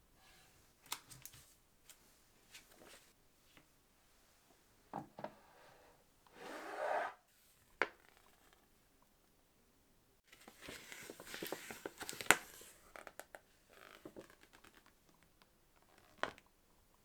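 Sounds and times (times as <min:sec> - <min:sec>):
packaging crinkling and rustling: 0:10.3 - 0:15.2.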